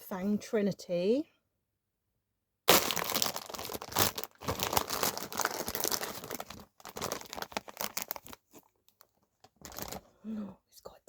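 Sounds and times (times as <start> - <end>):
packaging crinkling and tearing: 2.7 - 10.1.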